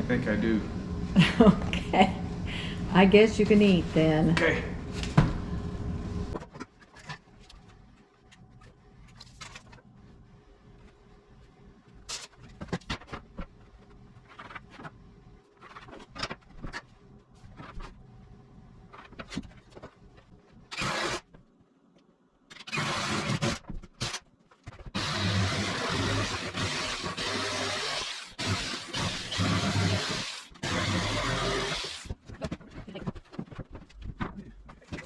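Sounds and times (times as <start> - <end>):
power tool motor running: 25.0 - 32.1
knocks and clatter of handling: 32.1 - 35.0.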